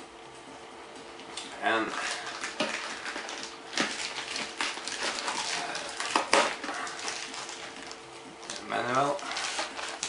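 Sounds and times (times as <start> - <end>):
packaging rustling and clicking: 1.9 - 10.0.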